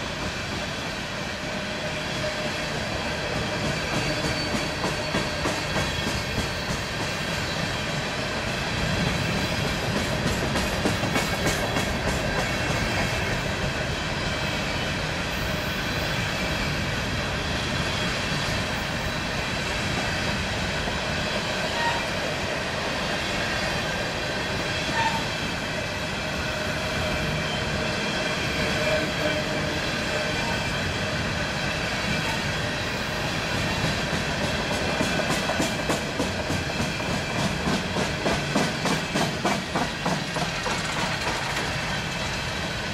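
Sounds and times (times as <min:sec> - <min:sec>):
freight train rolling past: 0:00.0 - 0:42.9
steel wheels clicking over rail joints: 0:09.2 - 0:13.8, 0:33.6 - 0:42.9.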